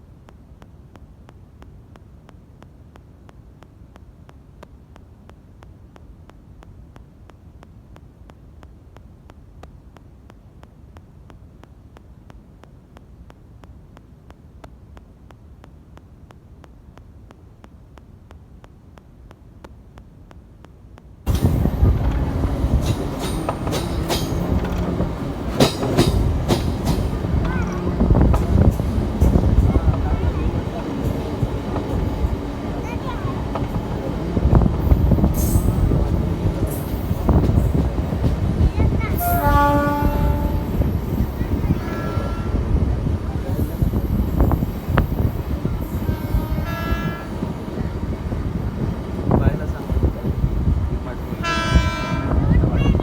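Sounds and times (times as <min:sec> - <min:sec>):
train rumbling: 0:21.2 - 0:53.0
wheels clacking over rails: 0:21.3 - 0:39.1.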